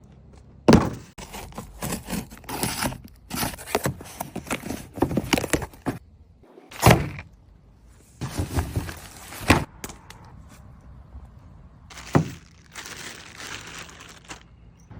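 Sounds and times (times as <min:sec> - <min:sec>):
packaging rustling and scraping: 0:01.1 - 0:06.0, 0:08.2 - 0:09.7, 0:11.9 - 0:14.6.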